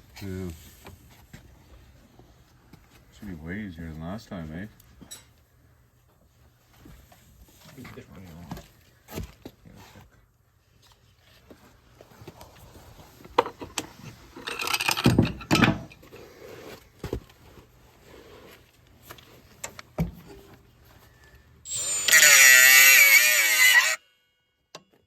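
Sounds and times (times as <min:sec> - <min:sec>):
tools and metal parts clanking: 0:14.4 - 0:16.0
loud wavering pitched sound: 0:21.7 - 0:24.4.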